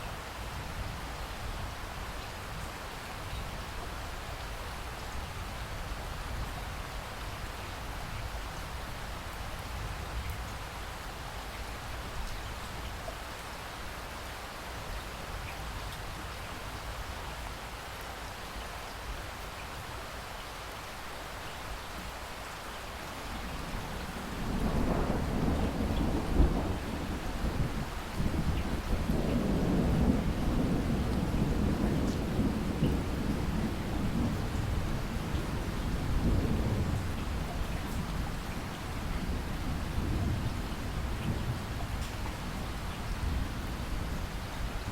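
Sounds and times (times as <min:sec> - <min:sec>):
heavy rain falling: 0:00.0 - 0:44.9
thunder rumble: 0:23.5 - 0:44.9.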